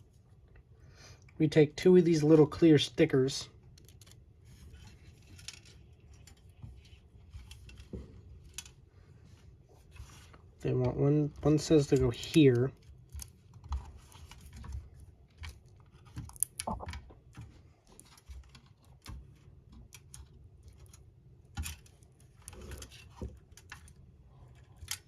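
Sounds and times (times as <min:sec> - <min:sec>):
plastic parts clicking and tapping: 0:03.6 - 0:04.2, 0:04.8 - 0:08.8, 0:10.1 - 0:25.0.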